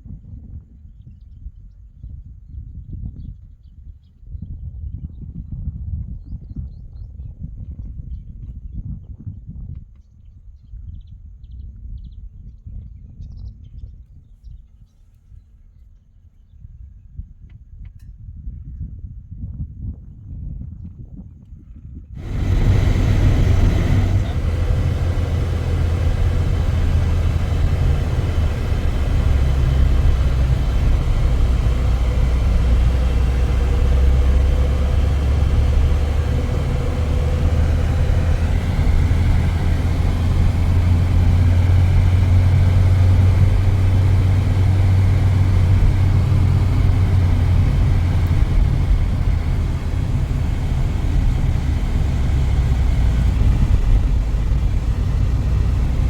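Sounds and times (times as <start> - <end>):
faint engine tones: 22.2 - 56.0
vehicle rumble: 22.2 - 56.0.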